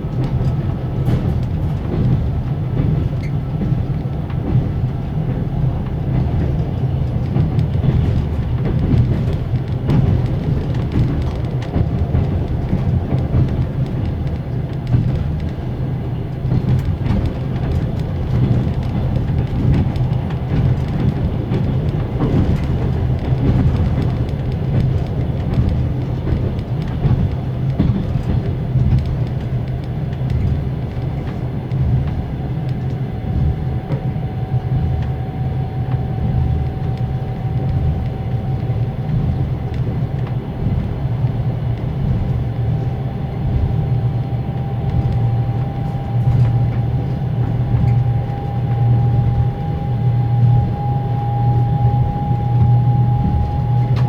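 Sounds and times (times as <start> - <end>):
train wheels clattering over rail joints: 0.0 - 54.0
generator whine: 43.9 - 54.0.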